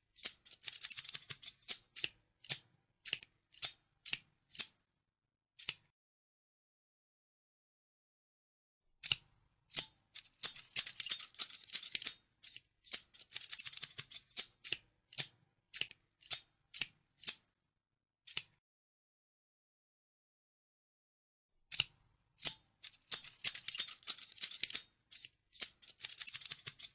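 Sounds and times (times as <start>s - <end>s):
scissors snipping: 0.2s - 4.8s, 5.6s - 5.9s, 9.0s - 17.4s, 18.3s - 18.6s, 21.7s - 26.9s.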